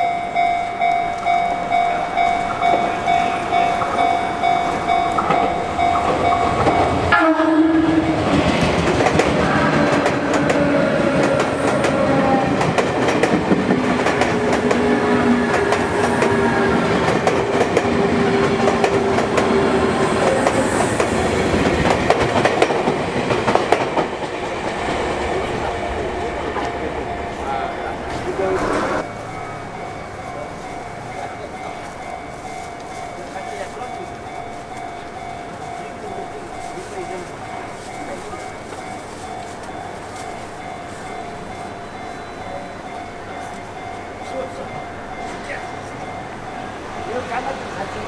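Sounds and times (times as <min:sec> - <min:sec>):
electric train whine: 0:00.0 - 0:48.0
level-crossing alarm ringing: 0:00.0 - 0:48.0
train horn blast: 0:01.5 - 0:08.4
train wheels clattering over rail joints: 0:02.5 - 0:07.1.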